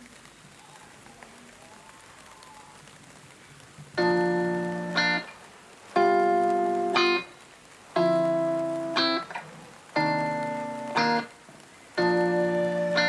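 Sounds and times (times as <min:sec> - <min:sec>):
faint steady hiss: 0:00.0 - 0:13.0
strummed guitar chords: 0:04.0 - 0:05.3, 0:06.0 - 0:07.3, 0:08.0 - 0:09.4, 0:10.0 - 0:11.3, 0:12.0 - 0:13.0.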